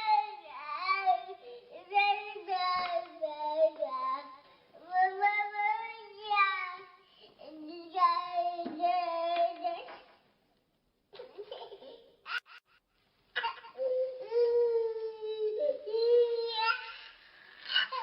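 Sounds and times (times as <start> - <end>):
young child crying: 13.4 - 18.0.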